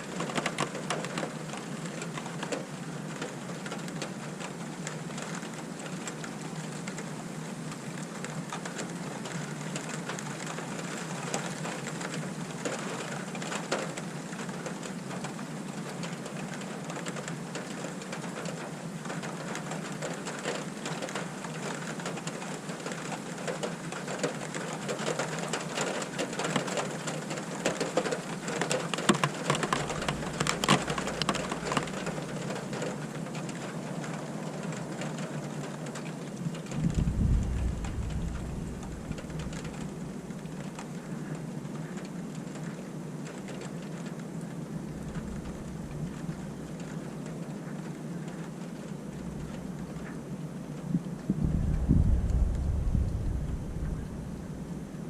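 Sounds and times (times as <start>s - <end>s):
rain pattering: 0.0s - 55.0s
faint low rumble: 29.6s - 32.4s, 36.6s - 40.8s, 44.6s - 47.7s, 48.8s - 55.0s.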